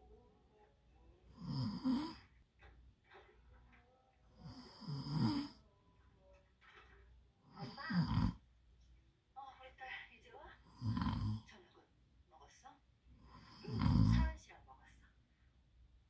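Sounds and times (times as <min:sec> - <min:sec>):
puppy snoring: 0:01.3 - 0:02.3, 0:04.3 - 0:05.6, 0:07.5 - 0:08.4, 0:10.6 - 0:11.5, 0:13.2 - 0:14.4.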